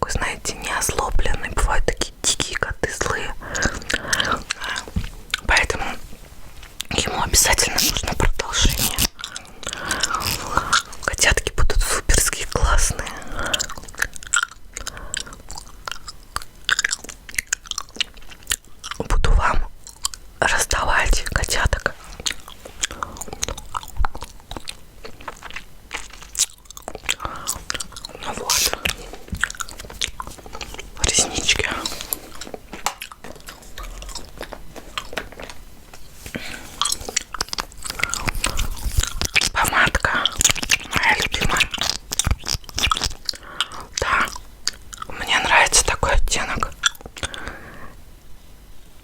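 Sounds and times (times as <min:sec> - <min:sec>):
gum chewing wet smacks: 0:13.5 - 0:19.1, 0:21.2 - 0:35.6, 0:36.8 - 0:45.2.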